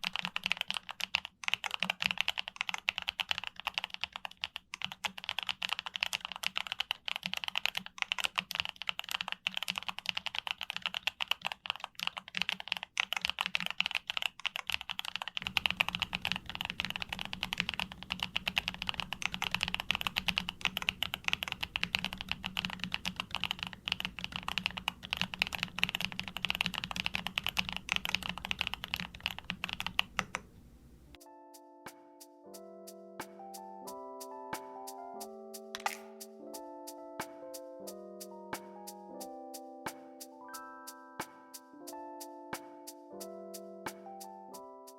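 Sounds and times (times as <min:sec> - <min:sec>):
fast typing on mechanical keyboard: 0:00.0 - 0:30.4.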